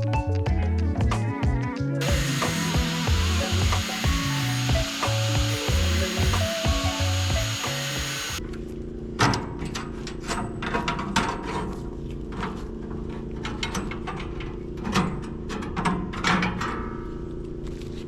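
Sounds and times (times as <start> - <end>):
background music: 0.0 - 8.4
saw cutting wood: 2.0 - 8.4.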